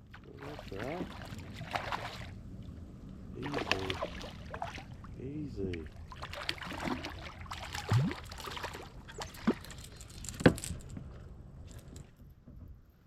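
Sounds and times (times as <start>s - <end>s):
water splashing: 0.0s - 2.4s, 3.4s - 9.8s.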